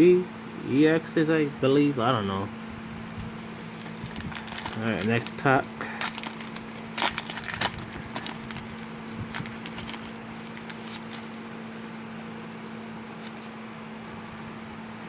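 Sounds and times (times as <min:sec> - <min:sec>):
foil pack tearing and crinkling: 0:03.6 - 0:11.9.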